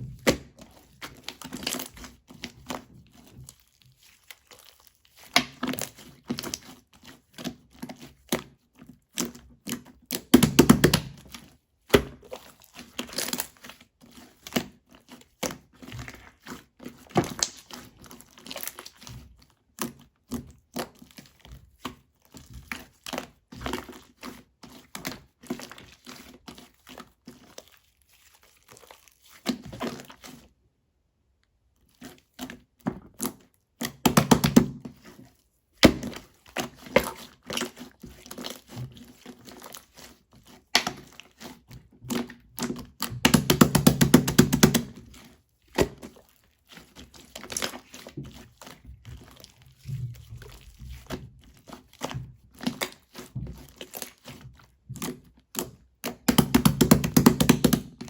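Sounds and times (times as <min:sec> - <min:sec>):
knocks and taps: 0:56.3 - 0:57.9.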